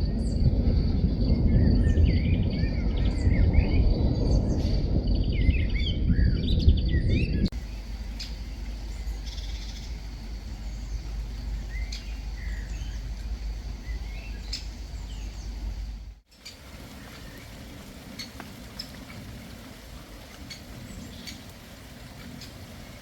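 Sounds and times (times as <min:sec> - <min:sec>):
low hum: 0:00.0 - 0:16.2
garden birds chirping: 0:00.0 - 0:23.0
steady low rumble: 0:00.0 - 0:23.0.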